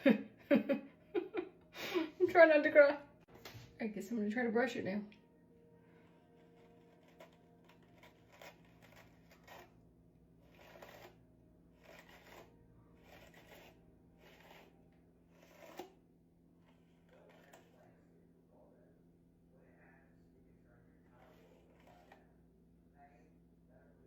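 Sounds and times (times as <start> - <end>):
hairbrush brushing hair: 6.1 - 9.8, 10.4 - 11.2, 11.8 - 16.0, 16.7 - 18.0, 21.1 - 22.4.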